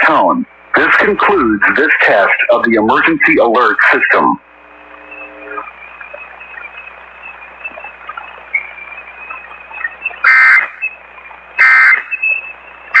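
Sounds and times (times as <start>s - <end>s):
radio hiss: 0.0s - 13.0s
buzzy digital data bursts: 4.1s - 13.0s
faint steady whistle: 5.1s - 13.0s.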